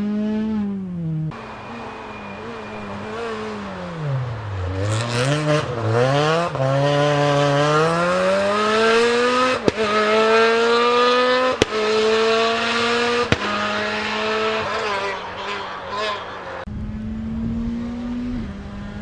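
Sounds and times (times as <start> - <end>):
rally car engine revving: 0.0 - 19.0
sharp cracks: 11.5 - 12.0, 13.2 - 13.8.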